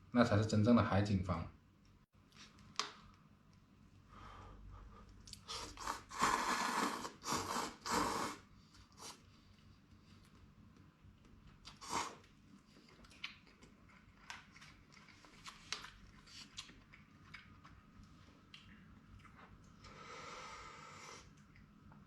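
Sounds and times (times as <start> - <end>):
chewing and mouth smacks: 11.2 - 19.8.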